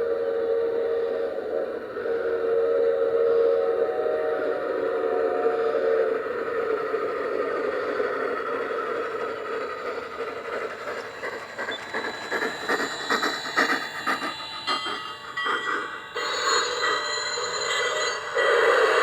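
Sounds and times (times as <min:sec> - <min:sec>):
model train running: 0:00.0 - 0:19.0
wheels clicking on rails: 0:04.5 - 0:19.0
whistle-like tone: 0:10.9 - 0:19.0.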